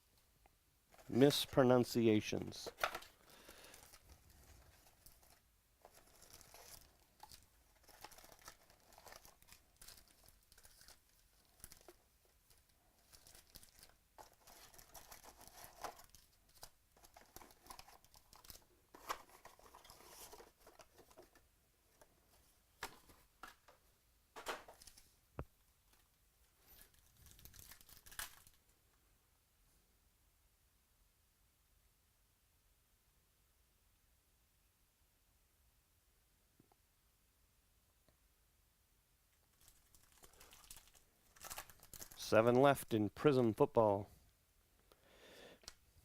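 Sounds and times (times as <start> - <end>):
cards rustling: 0.9 - 21.4, 26.6 - 28.6, 39.5 - 42.4
wrappers tearing and crinkling: 2.8 - 12.0, 13.0 - 20.4, 26.7 - 28.6, 39.5 - 42.3.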